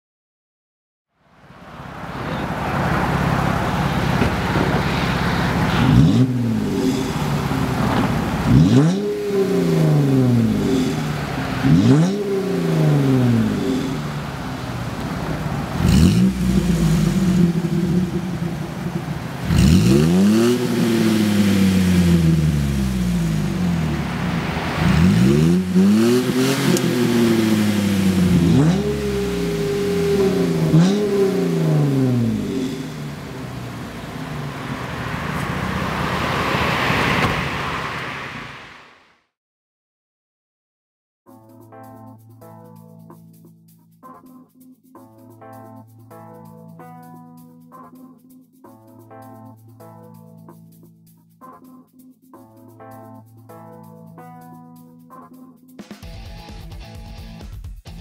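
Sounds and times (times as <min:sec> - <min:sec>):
car engine revving: 0:01.7 - 0:39.0.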